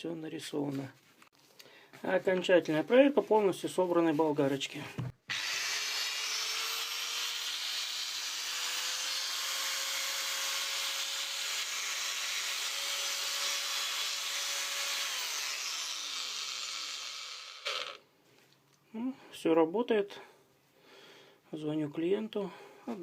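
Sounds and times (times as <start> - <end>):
angle grinder whining: 5.3 - 18.0.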